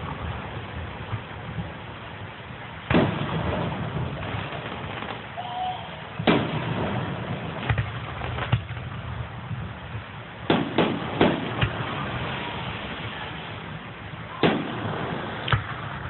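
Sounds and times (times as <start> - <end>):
noisy rumble: 0.0 - 16.0
fireworks bangs: 2.7 - 16.0
small firework pop: 7.6 - 8.8, 15.4 - 15.8.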